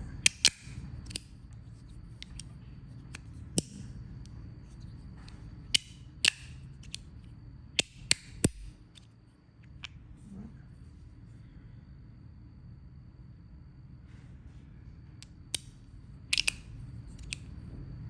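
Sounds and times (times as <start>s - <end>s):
fidget toy clicks: 16.4s - 17.4s.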